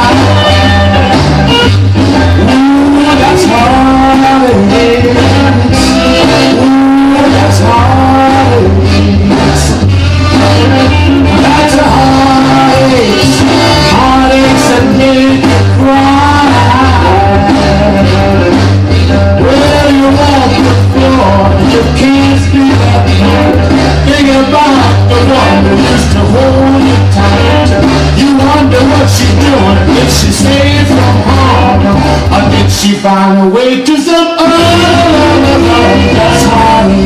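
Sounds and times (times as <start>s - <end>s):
rock and roll band music: 0.0s - 37.0s.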